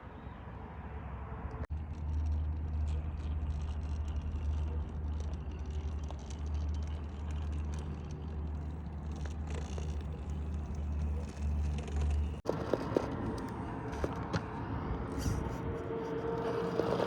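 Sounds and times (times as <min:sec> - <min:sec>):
rc car motor humming: 0:02.1 - 0:14.5.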